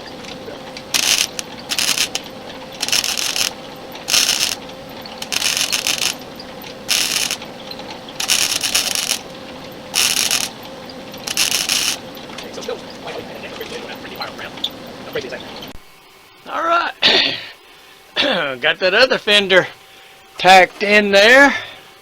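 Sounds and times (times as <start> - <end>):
welding crackling bursts: 0.0 - 12.3
faint steady hum: 0.0 - 22.0.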